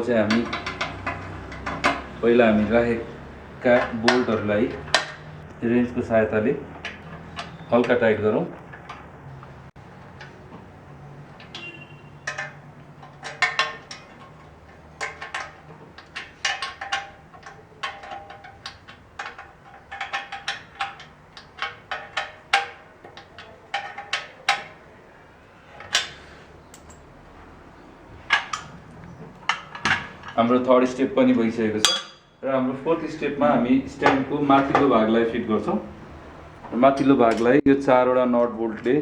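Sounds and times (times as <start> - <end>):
wrench clicking on metal frame: 0.0 - 24.9, 25.8 - 27.2, 28.2 - 32.2.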